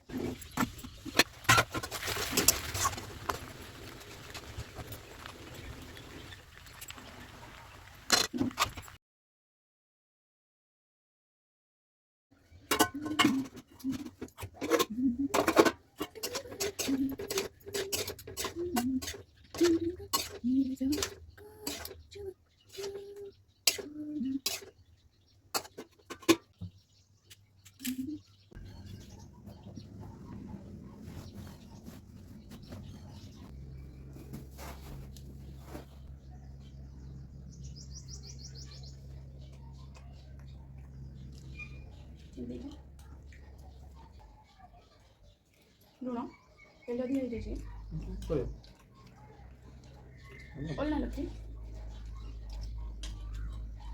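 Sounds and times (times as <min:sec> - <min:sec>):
utensil clattering against cookware: 0:12.7 - 0:22.0
bird chirping: 0:16.2 - 0:53.9.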